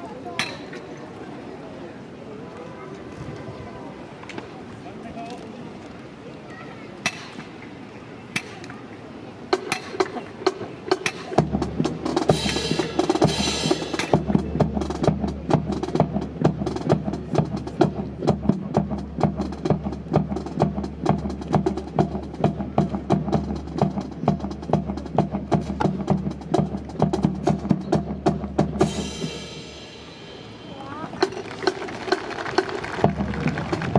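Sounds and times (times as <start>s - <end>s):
drum-led backing music: 9.5s - 33.9s
sharp clacks: 31.2s - 33.9s.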